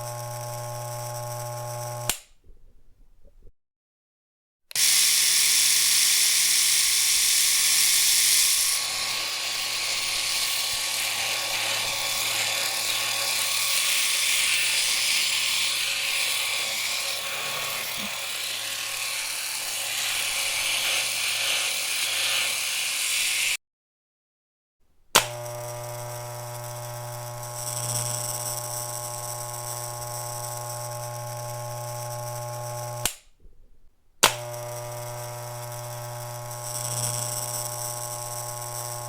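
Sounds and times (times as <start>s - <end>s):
electric shaver buzzing: 0.0s - 2.3s, 4.7s - 23.6s, 25.2s - 33.2s, 34.2s - 39.0s.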